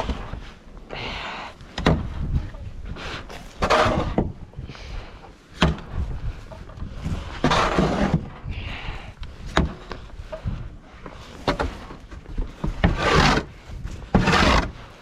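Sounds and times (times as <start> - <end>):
snow shovel scraping: 2.9 - 4.4, 7.0 - 8.4, 12.6 - 15.0.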